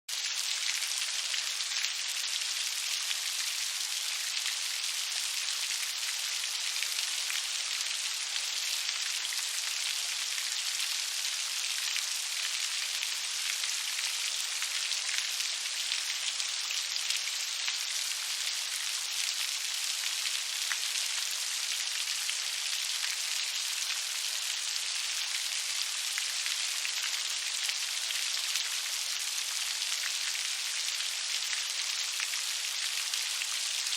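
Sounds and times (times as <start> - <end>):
steady rain patter: 0.1 - 33.9.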